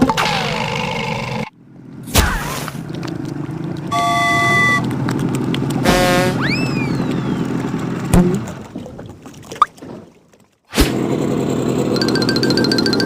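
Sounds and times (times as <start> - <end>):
buzzy honk: 3.9 - 4.8, 5.8 - 6.9
whistle glides: 3.9 - 4.9, 5.9 - 7.6
short horn-like toot: 5.8 - 6.8
cartoon hit: 5.9 - 6.7.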